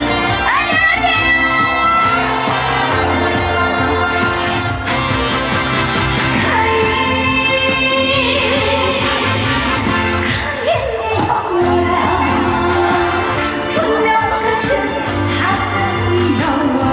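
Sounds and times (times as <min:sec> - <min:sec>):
live band with bass line: 0:00.0 - 0:10.4.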